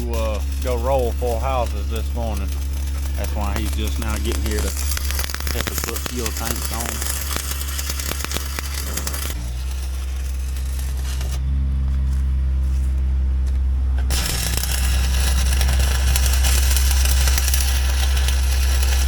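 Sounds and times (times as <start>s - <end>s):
hissing noise: 0.0s - 11.5s
engine idling: 0.0s - 19.0s.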